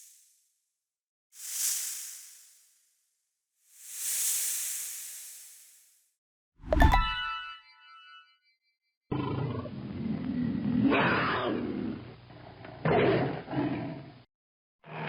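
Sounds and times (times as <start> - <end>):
big cat roaring: 9.1 - 14.0.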